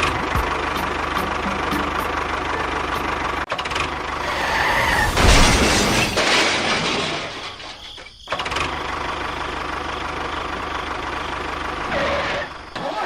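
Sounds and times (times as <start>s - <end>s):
small engine running: 0.0s - 4.6s, 8.3s - 13.0s
rushing noise: 4.1s - 6.7s.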